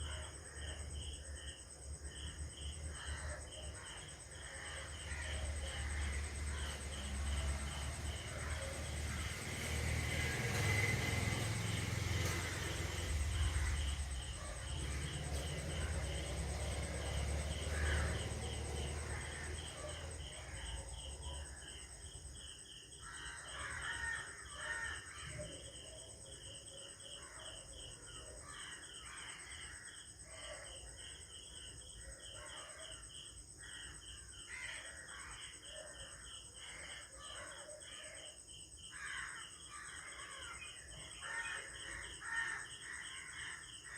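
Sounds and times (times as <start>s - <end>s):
insects chirping: 0.0s - 43.9s
crows cawing: 2.9s - 6.7s, 13.4s - 15.9s, 17.6s - 20.8s, 23.0s - 25.4s, 34.5s - 35.5s, 38.9s - 43.9s.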